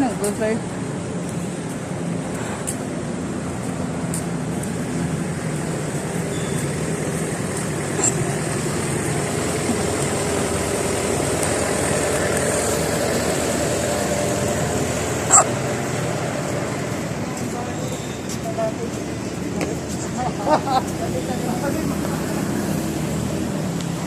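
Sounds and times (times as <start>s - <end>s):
roadside traffic noise: 0.0s - 24.0s
woman hiccuping: 8.0s - 8.2s.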